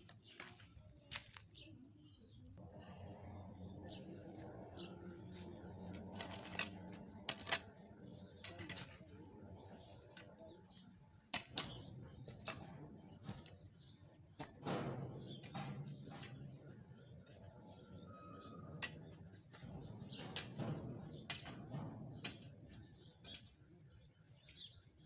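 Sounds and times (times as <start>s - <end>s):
soil scraping from hand weeding: 4.8s - 7.7s.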